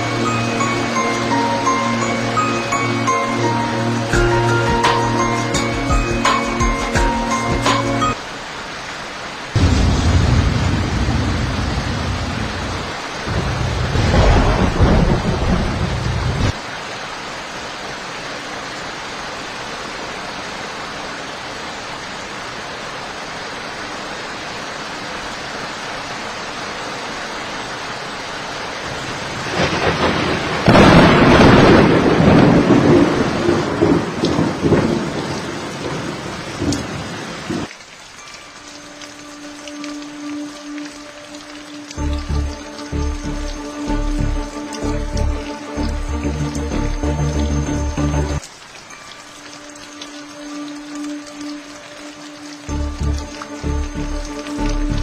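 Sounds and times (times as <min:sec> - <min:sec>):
heavy rain: 0:00.0 - 0:55.0
thunder rumbling and cracking: 0:09.6 - 0:16.6, 0:29.2 - 0:37.7.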